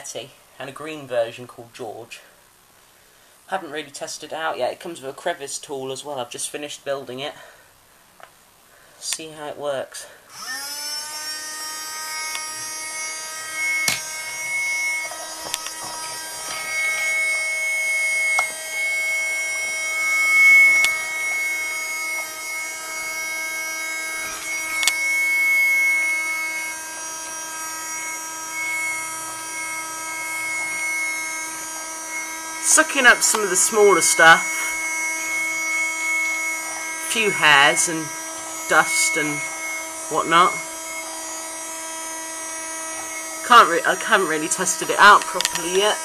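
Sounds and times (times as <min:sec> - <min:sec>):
small vacuum cleaner motor whine: 0:10.3 - 0:46.0
sharp clicks: 0:13.4 - 0:17.4, 0:18.1 - 0:23.2, 0:24.0 - 0:25.7, 0:44.7 - 0:45.9.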